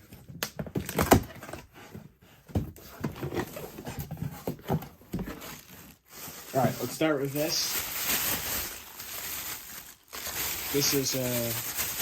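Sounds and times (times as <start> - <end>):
knocks and clatters in cardboard box: 0.0 - 5.9
rustling: 2.7 - 12.0.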